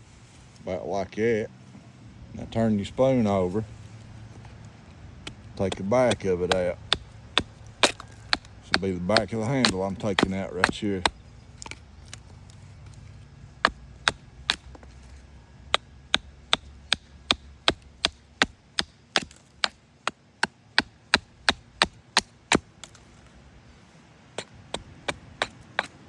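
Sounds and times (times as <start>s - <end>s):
hatchet chopping wood: 5.3s - 12.2s, 13.6s - 23.2s, 24.4s - 26.0s.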